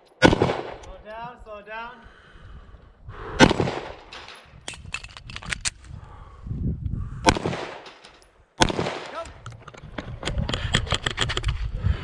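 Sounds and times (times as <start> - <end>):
loud pistol shot: 0.2 - 0.8, 3.4 - 4.0, 7.2 - 7.8, 8.6 - 9.2.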